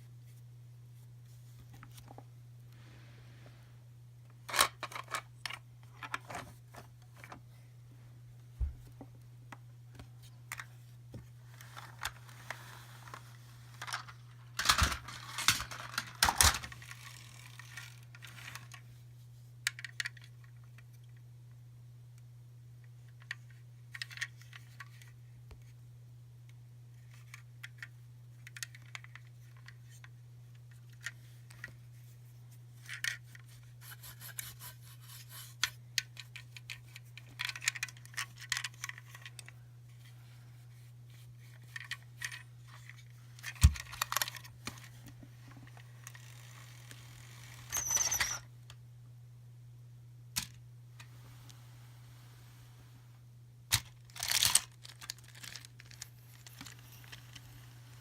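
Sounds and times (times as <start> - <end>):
low electrical hum: 0.0 - 58.0
packaging rustling and clattering: 53.7 - 57.5.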